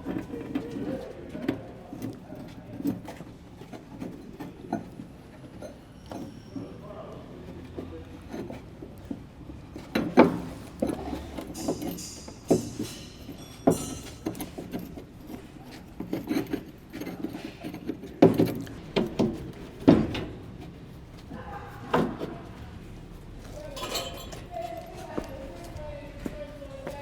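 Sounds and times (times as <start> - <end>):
tools and pipe fittings clinking: 9.8 - 20.2, 23.4 - 25.8.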